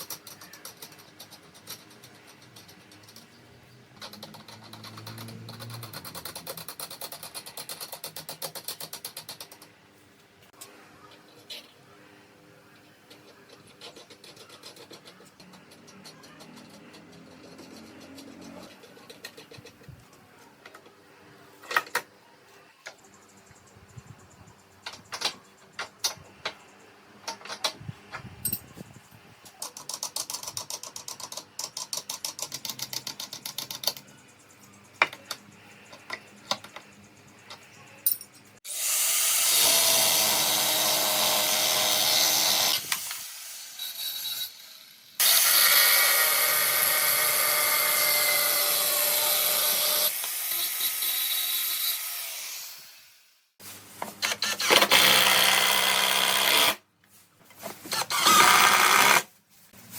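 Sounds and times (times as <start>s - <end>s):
ratchet-like clicks: 4.0s - 9.7s, 29.5s - 37.7s
power tool running: 38.7s - 53.0s, 54.2s - 56.8s, 57.9s - 59.3s.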